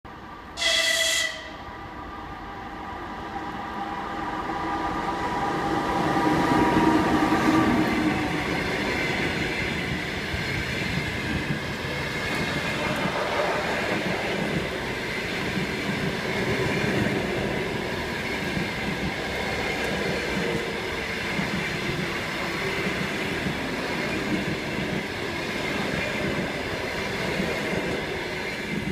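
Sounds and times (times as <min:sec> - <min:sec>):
train rumbling past: 0:00.4 - 0:28.9
locomotive horn blast: 0:00.6 - 0:01.6.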